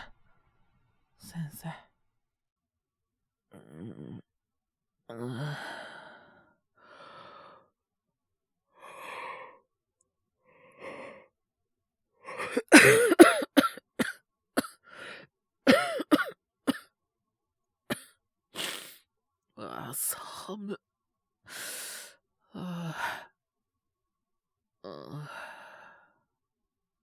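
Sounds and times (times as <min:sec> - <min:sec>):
man coughing: 0:12.4 - 0:14.7, 0:15.7 - 0:16.8.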